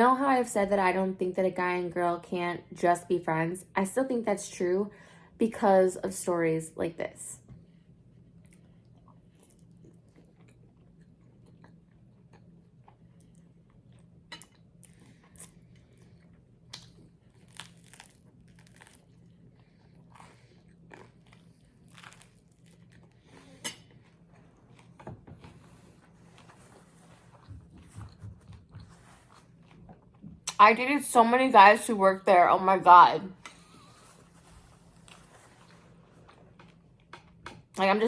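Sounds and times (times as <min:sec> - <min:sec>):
faint low hum: 0:00.0 - 0:38.0
crunching garlic bread: 0:08.4 - 0:23.6
person chewing: 0:08.4 - 0:25.0.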